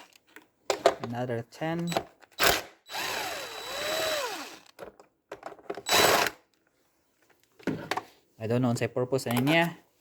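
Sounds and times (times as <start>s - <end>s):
cordless power tool motor whirring: 2.4s - 4.8s, 5.9s - 6.4s.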